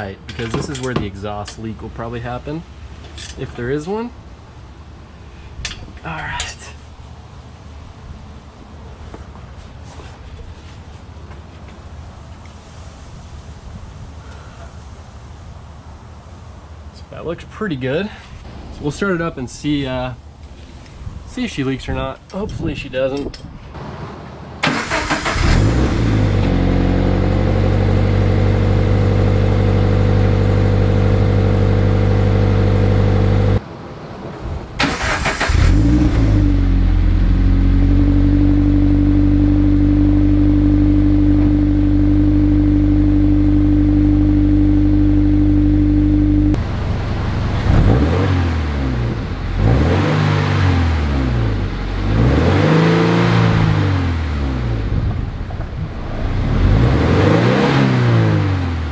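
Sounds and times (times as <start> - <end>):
car engine revving: 23.8 - 33.6, 34.7 - 55.0, 56.0 - 58.9
car engine idling: 23.8 - 49.8.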